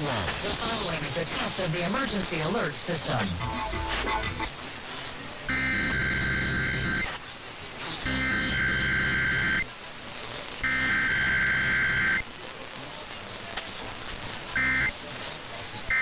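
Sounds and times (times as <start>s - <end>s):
shrill digital data screech: 8.0s - 9.6s, 14.6s - 15.0s.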